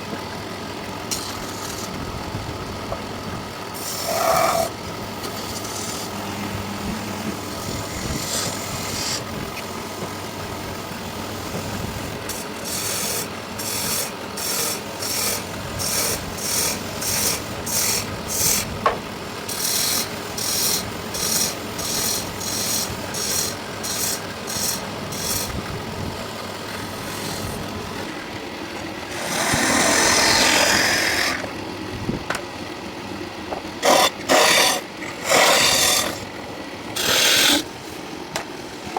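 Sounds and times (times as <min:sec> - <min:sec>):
rasp scraping wood: 0:01.1 - 0:02.0, 0:03.8 - 0:06.2, 0:07.2 - 0:10.2, 0:11.2 - 0:18.8, 0:19.4 - 0:28.2, 0:29.0 - 0:31.5, 0:33.8 - 0:36.3, 0:36.9 - 0:37.7.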